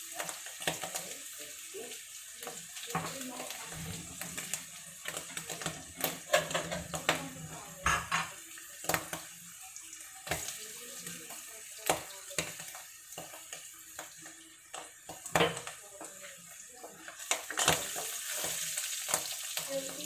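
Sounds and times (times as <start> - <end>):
garlic and mushrooms sizzling in oil: 0.0 - 20.0
utensil clicking against pan: 4.3 - 7.2, 7.8 - 9.3, 16.8 - 20.0.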